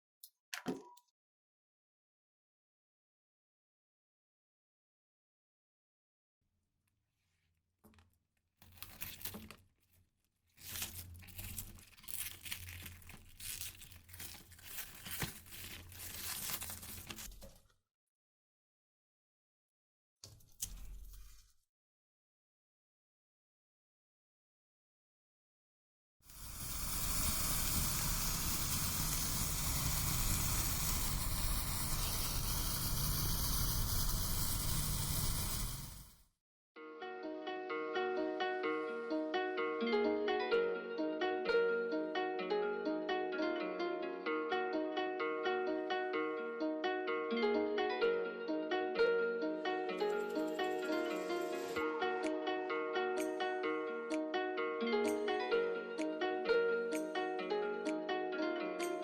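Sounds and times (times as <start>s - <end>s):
firework crackling: 26.3s - 36.1s.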